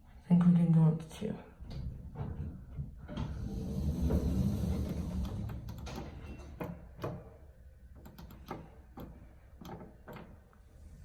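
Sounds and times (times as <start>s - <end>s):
elevator doors sliding: 2.2s - 10.5s
light clicks and knocks: 4.1s - 10.4s.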